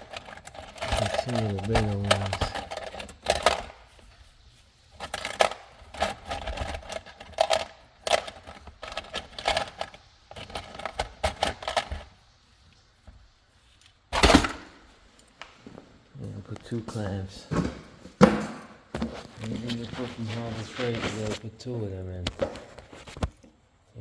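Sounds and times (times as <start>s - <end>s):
metal parts clinking and clattering: 0.0s - 3.8s, 5.0s - 12.0s, 14.1s - 14.8s.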